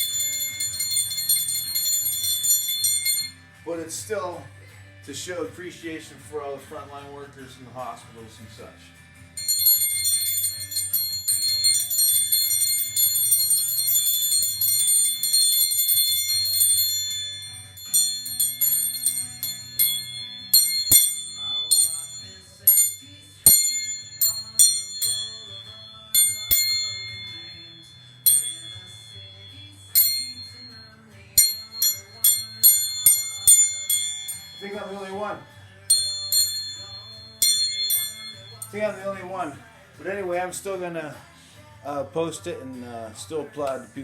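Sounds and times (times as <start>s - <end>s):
hand bell ringing: 0.0s - 3.5s, 9.4s - 39.6s.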